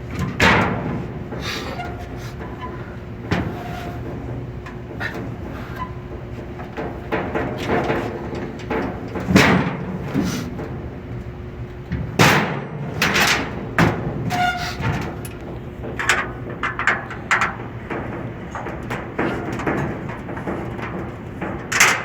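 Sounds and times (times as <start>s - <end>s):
loud metal bangs: 12.1s - 22.0s.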